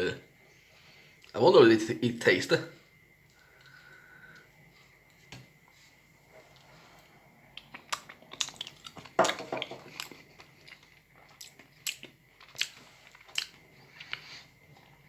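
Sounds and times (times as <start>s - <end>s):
person chewing wet food: 6.4s - 15.0s.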